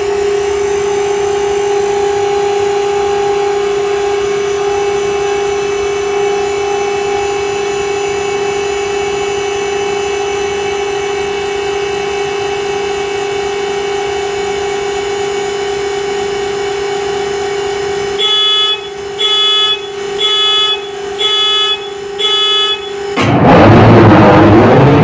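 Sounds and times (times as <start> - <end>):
diesel engine turning over: 0.0 - 25.0
short warning beeps: 18.2 - 23.1.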